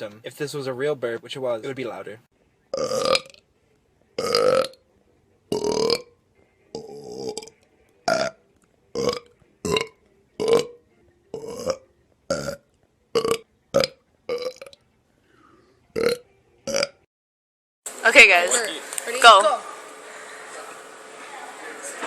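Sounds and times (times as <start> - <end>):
person burping: 2.7 - 3.4, 4.2 - 4.8, 5.5 - 7.5, 8.1 - 14.8, 15.9 - 17.0.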